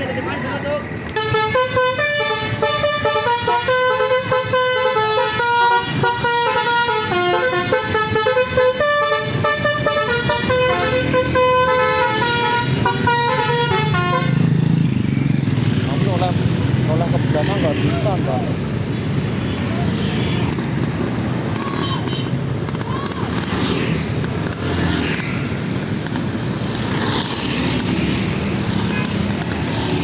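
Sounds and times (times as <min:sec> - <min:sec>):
musical bus horn playing a tune: 0:01.2 - 0:14.5.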